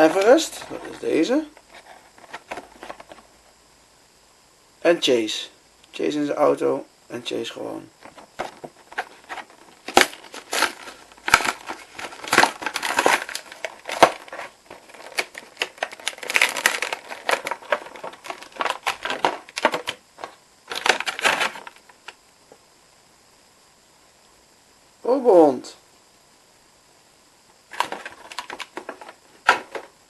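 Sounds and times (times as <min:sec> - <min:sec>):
packaging crinkling and tearing: 0:08.2 - 0:22.0, 0:27.7 - 0:29.6.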